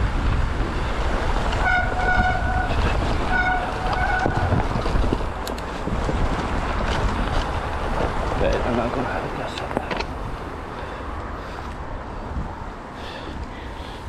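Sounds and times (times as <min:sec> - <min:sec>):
wind rushing over microphone: 0:00.0 - 0:14.0
high steady squeal: 0:01.6 - 0:04.6.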